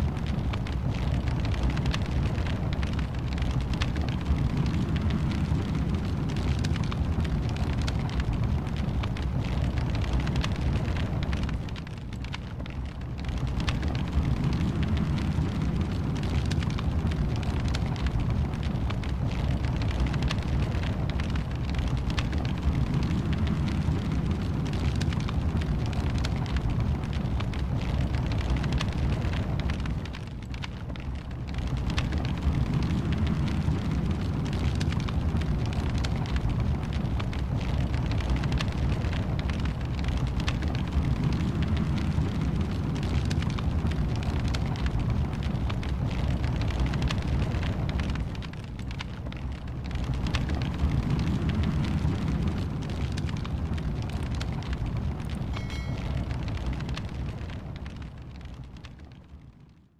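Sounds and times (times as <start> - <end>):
wood fire crackling: 0.0 - 59.9.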